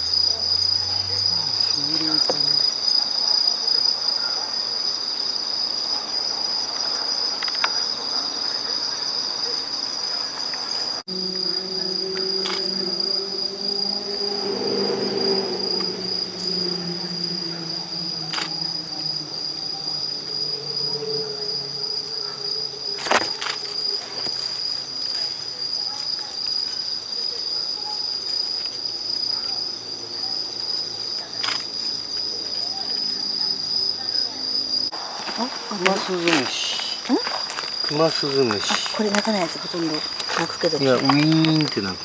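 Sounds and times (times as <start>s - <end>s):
crickets trilling: 0.0s - 42.0s
low hum falling in pitch: 11.1s - 22.9s.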